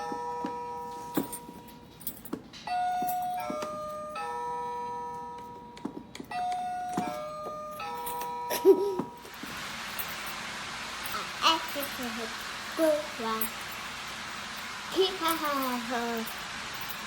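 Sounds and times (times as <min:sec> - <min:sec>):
electronic doorbell chime tune: 0:00.0 - 0:01.9, 0:02.7 - 0:09.3.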